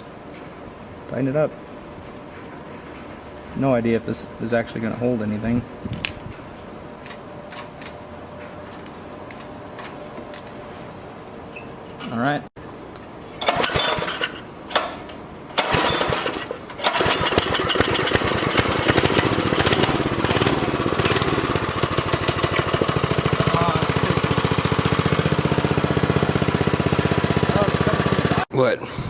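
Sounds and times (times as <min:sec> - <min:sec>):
engine being cranked: 0:13.4 - 0:14.9, 0:15.5 - 0:28.4
engine running steadily: 0:15.6 - 0:29.0.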